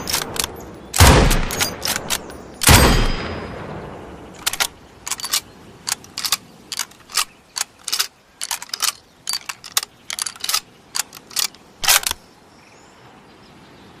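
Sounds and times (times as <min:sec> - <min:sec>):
rifle bolt clicking: 0:00.0 - 0:00.6, 0:01.3 - 0:02.8, 0:04.4 - 0:12.2.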